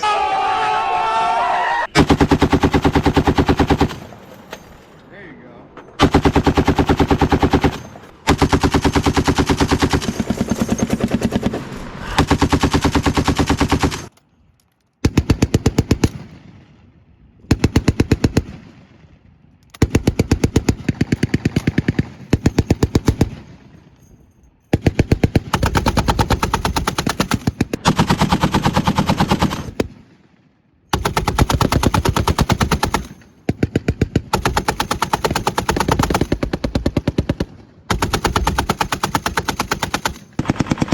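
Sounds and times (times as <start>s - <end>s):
machine-gun fire: 2.0s - 4.2s, 6.0s - 14.1s, 24.8s - 30.0s, 30.9s - 40.9s.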